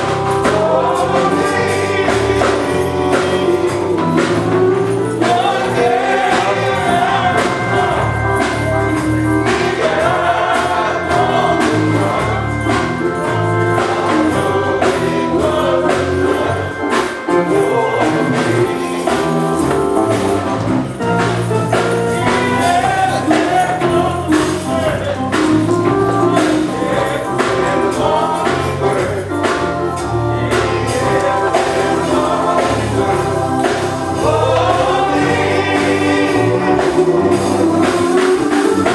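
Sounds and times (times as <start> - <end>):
band with bass and percussion: 0.0 - 38.9
gospel choir singing: 0.0 - 38.9.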